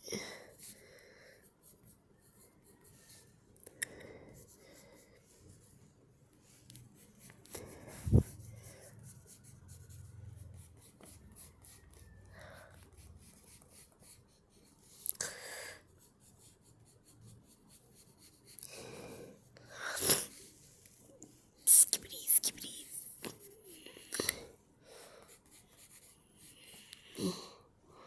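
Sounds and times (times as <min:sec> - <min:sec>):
pencil scratching on paper: 0:00.5 - 0:00.8, 0:01.4 - 0:03.4, 0:06.8 - 0:15.0, 0:15.8 - 0:19.4, 0:21.6 - 0:24.2, 0:25.0 - 0:27.2.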